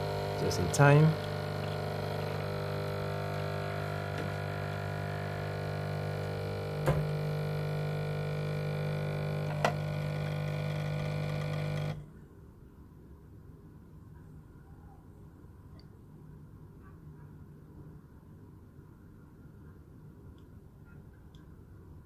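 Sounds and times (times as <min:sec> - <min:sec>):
coffee machine pump buzzing: 0:00.0 - 0:12.0.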